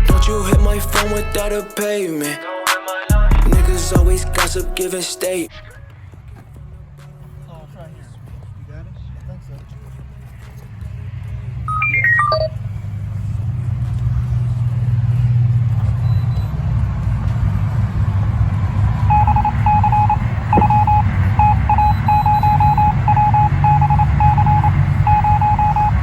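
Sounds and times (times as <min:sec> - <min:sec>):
falling run of tones: 0:11.7 - 0:12.5, 0:19.1 - 0:26.0
short high beeps: 0:11.7 - 0:12.6, 0:19.1 - 0:26.0
steady low rumble: 0:18.0 - 0:25.9.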